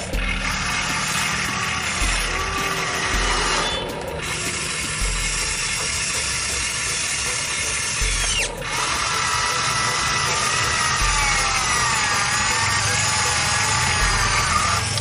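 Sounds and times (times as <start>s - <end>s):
electric motors whining: 0.0s - 15.0s.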